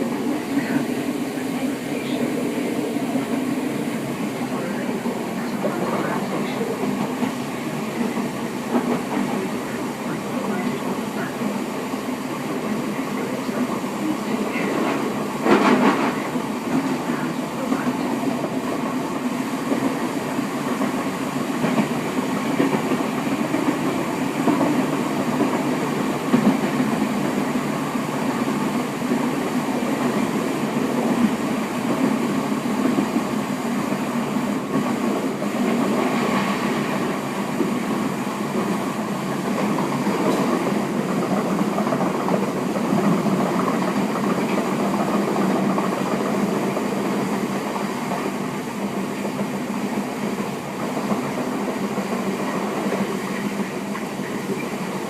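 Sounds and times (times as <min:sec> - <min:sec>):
train wheels rumbling on rails: 0:00.0 - 0:55.0.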